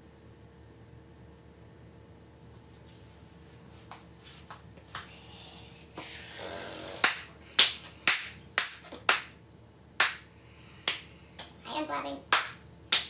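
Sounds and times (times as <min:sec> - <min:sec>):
sharp claps: 0:07.0 - 0:09.4, 0:10.0 - 0:11.6, 0:12.3 - 0:13.0.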